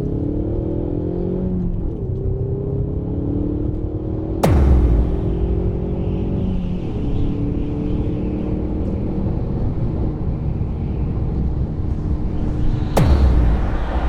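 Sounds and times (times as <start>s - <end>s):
deep bass hit: 4.4s - 7.7s, 12.7s - 14.0s
low rumble: 4.4s - 8.1s, 11.9s - 14.0s
fast falling sweep: 12.4s - 14.0s.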